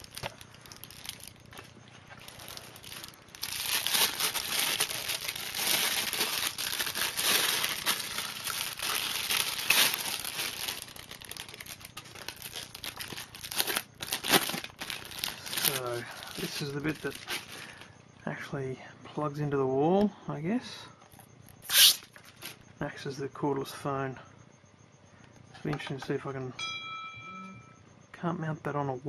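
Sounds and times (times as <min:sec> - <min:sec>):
plastic packaging crinkling: 0:00.0 - 0:17.9, 0:21.6 - 0:22.6.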